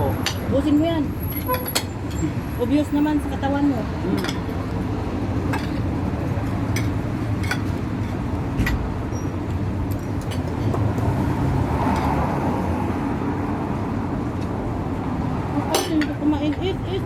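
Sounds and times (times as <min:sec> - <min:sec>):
cutlery clinking on plates: 0:01.3 - 0:02.3, 0:04.1 - 0:04.6, 0:05.5 - 0:05.9, 0:06.7 - 0:08.8, 0:15.7 - 0:16.6.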